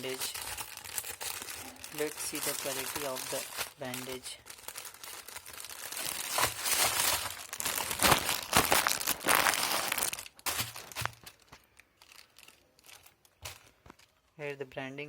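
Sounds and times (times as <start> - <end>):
packaging crinkling and rustling: 0.0 - 14.4.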